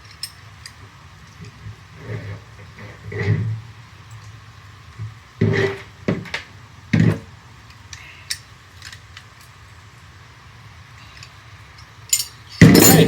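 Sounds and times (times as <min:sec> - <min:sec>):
wrenches clanking on metal fittings: 0:12.1 - 0:13.0.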